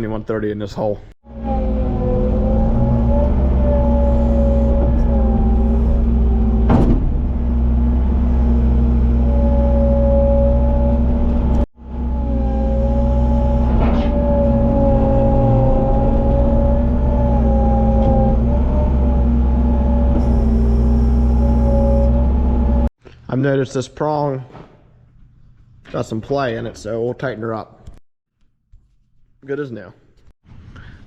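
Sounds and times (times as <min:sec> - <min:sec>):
diesel tractor engine running: 0:01.3 - 0:22.9
wavering high whine: 0:01.3 - 0:22.9.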